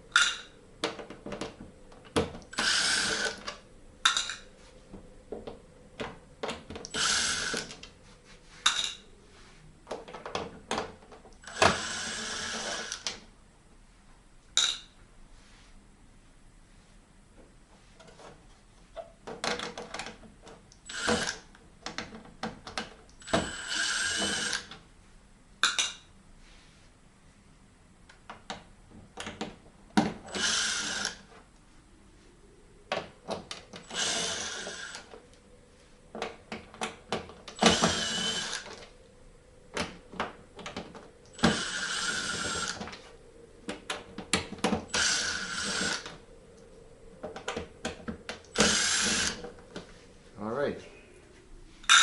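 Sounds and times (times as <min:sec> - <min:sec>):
cordless drill motor whining: 0:02.5 - 0:03.6, 0:06.8 - 0:07.9, 0:11.4 - 0:13.1, 0:20.8 - 0:21.5, 0:23.2 - 0:24.7, 0:30.3 - 0:31.3, 0:33.8 - 0:35.2, 0:37.6 - 0:38.9, 0:41.3 - 0:43.1, 0:44.9 - 0:46.2, 0:48.4 - 0:49.6.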